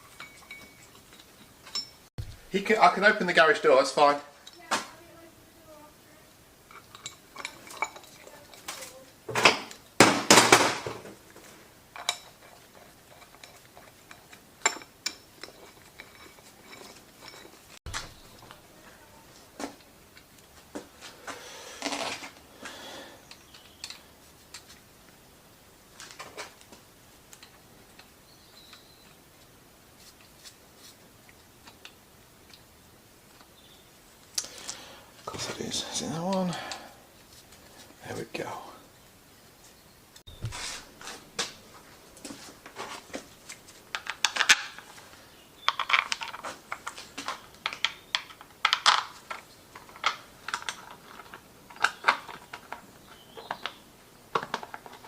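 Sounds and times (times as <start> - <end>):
metal tools clinking and clattering: 0.0 - 2.1, 6.7 - 9.9, 11.9 - 18.6.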